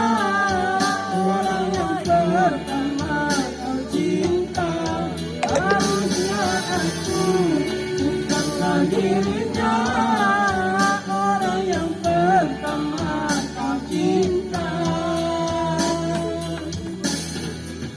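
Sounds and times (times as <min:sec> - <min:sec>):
guitar accompaniment: 0:05.2 - 0:09.5
person singing: 0:05.4 - 0:10.8.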